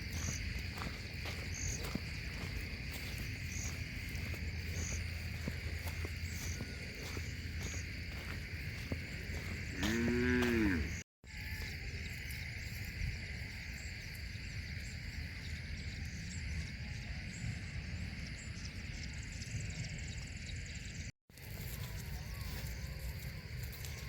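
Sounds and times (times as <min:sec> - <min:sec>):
chorus of insects: 0:00.0 - 0:24.0
cow mooing: 0:09.7 - 0:11.0.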